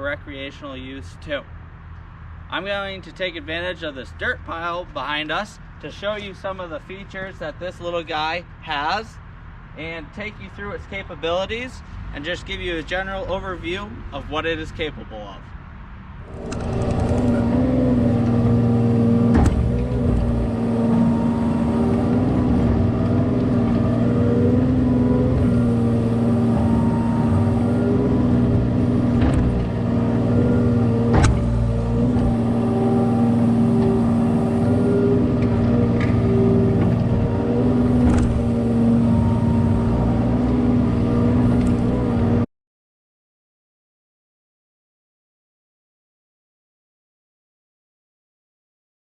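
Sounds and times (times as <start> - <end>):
diesel excavator engine running: 16.2 - 42.4
sharp knocks: 19.2 - 21.1, 28.4 - 32.4.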